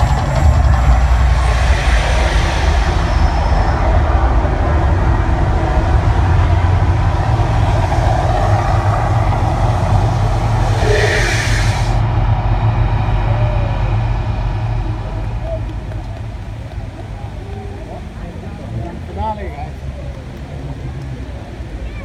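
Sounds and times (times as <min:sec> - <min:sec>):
broad hiss: 0:00.0 - 0:15.3
loud low rumble: 0:00.0 - 0:22.0.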